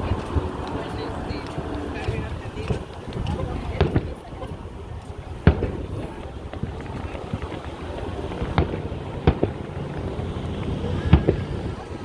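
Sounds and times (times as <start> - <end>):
distant fireworks rumble: 0.0 - 12.0
firework bangs: 0.0 - 12.0
firework cracks: 0.0 - 12.0.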